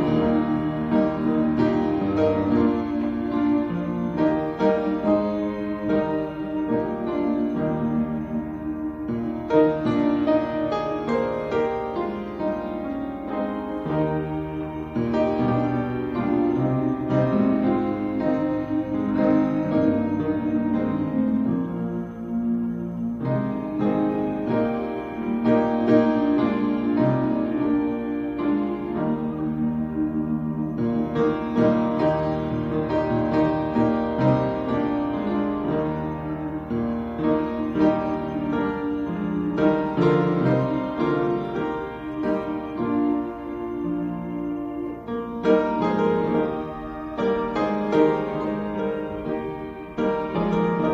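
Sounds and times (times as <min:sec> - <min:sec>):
slow quiet piano chords: 0:00.0 - 0:50.9.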